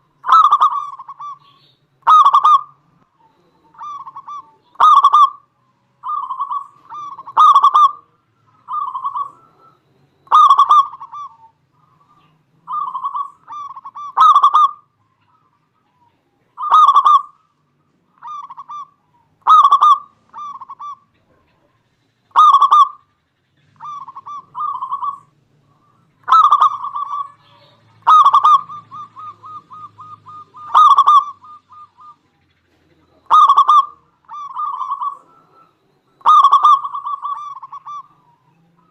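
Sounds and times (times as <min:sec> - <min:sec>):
dove cooing: 0:00.0 - 0:38.9.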